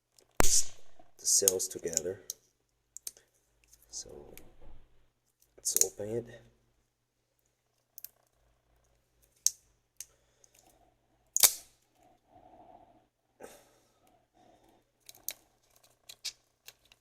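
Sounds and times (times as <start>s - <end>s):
plastic clicks and snaps: 3.0s - 3.8s, 11.4s - 11.7s, 15.1s - 17.0s.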